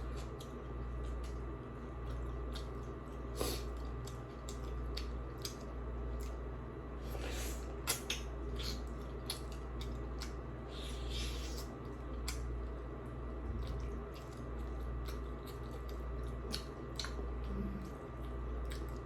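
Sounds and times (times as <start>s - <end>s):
low hum: 0.0s - 19.0s
wet chewing: 0.1s - 6.4s, 7.1s - 19.0s.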